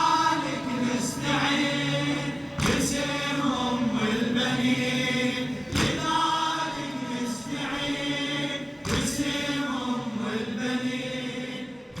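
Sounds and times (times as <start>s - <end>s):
men chanting: 0.0s - 12.0s
sharp slap: 2.6s - 3.0s, 5.7s - 6.1s, 8.8s - 9.2s.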